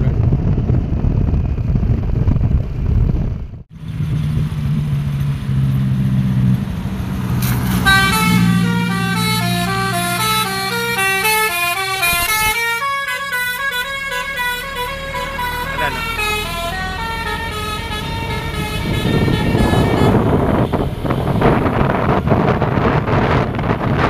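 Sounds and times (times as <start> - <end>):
bus engine and road noise: 0.0 - 24.0
musical bus horn melody: 7.7 - 21.8.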